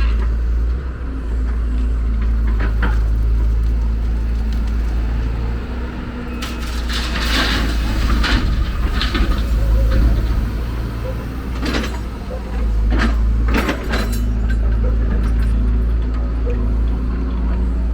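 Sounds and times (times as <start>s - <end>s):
diesel machinery rumbling: 0.0s - 17.9s
rock and earth scraping: 6.4s - 16.0s.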